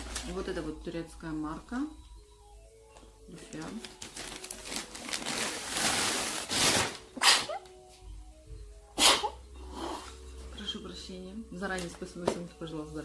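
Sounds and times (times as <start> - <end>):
woman sneezing: 7.2 - 7.6, 9.0 - 9.4.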